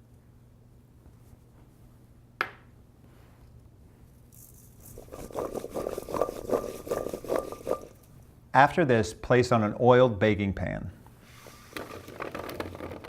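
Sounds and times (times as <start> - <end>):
low steady hum: 0.0 - 12.1
vegetables rattling in a bowl: 4.3 - 8.2, 11.8 - 13.0.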